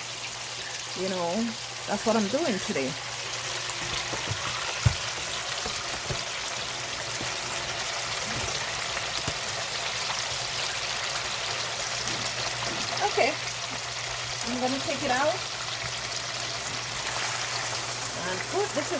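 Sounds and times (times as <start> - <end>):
food deep-frying in oil: 0.0 - 18.9
dull knock: 4.1 - 6.3.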